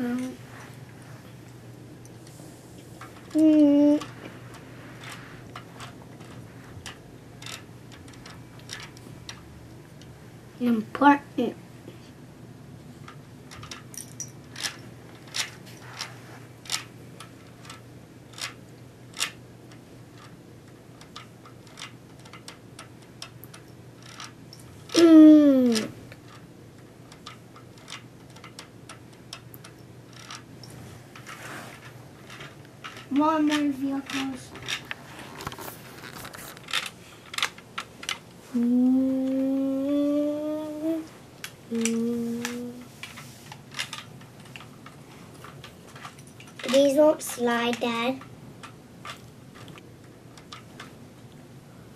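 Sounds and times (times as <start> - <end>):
plastic toy pieces clicking: 17.5 - 20.3, 21.0 - 26.4, 27.1 - 30.4, 45.4 - 49.8
child humming: 24.9 - 25.9, 38.5 - 41.1, 41.7 - 42.8
plastic toy pieces clattering: 45.4 - 48.2.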